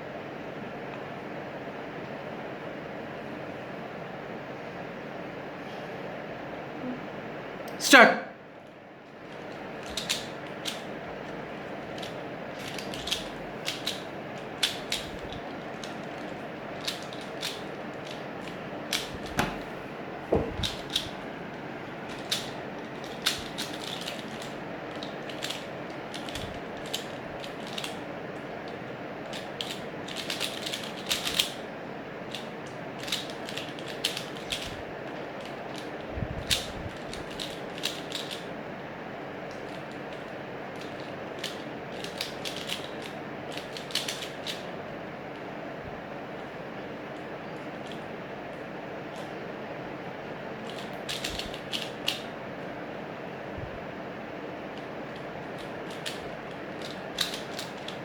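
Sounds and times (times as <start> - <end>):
puzzle cube plastic clicks: 9.3 - 19.4, 22.1 - 28.0, 28.7 - 31.6, 32.3 - 34.7, 35.4 - 38.4, 39.5 - 44.6, 50.6 - 52.3, 55.5 - 58.0.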